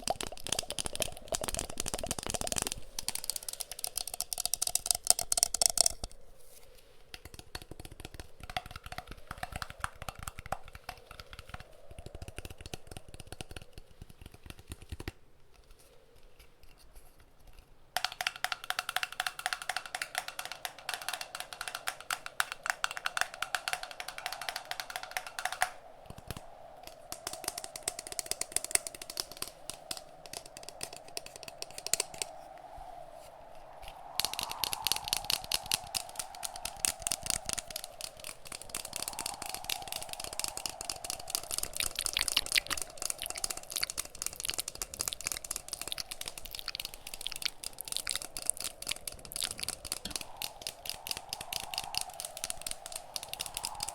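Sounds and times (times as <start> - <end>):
wind: 0.0 - 53.9
fingertip tapping on hard objects: 18.0 - 25.8.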